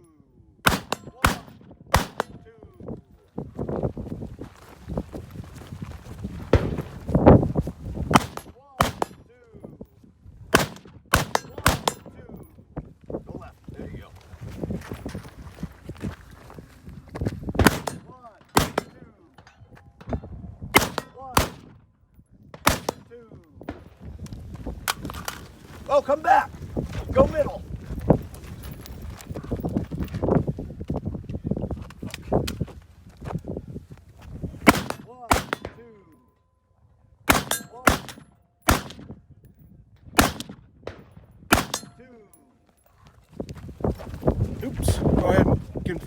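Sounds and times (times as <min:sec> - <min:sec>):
rifle shots: 0:00.6 - 0:02.4, 0:06.5 - 0:07.0, 0:08.1 - 0:09.2, 0:10.5 - 0:12.2, 0:17.6 - 0:19.1, 0:20.7 - 0:21.8, 0:22.6 - 0:23.9, 0:34.6 - 0:35.9, 0:37.3 - 0:39.2, 0:40.2 - 0:42.1.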